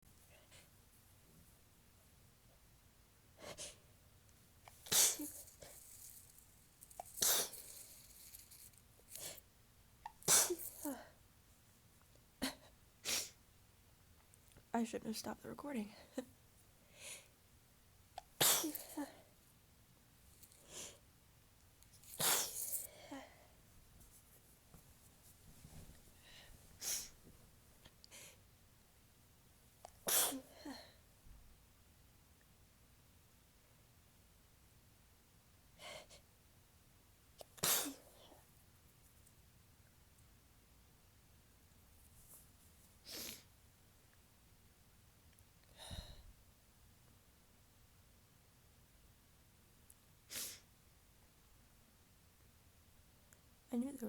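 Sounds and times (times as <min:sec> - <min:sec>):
woman sneezing: 0:04.9 - 0:05.4, 0:07.2 - 0:07.6, 0:10.1 - 0:11.1, 0:18.2 - 0:19.2, 0:22.2 - 0:23.2, 0:30.0 - 0:30.9, 0:37.5 - 0:38.2.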